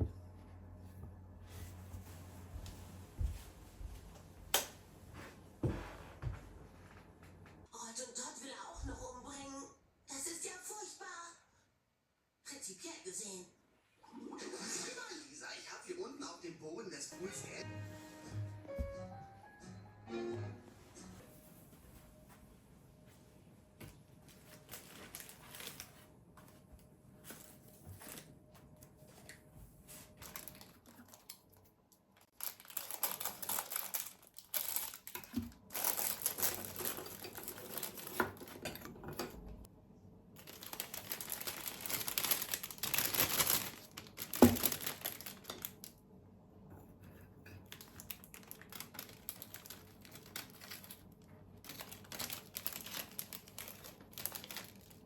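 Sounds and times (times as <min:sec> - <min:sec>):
wrapping material crinkling: 0:24.3 - 0:26.1, 0:30.0 - 0:31.6, 0:32.2 - 0:38.8, 0:40.4 - 0:46.0, 0:47.6 - 0:55.0.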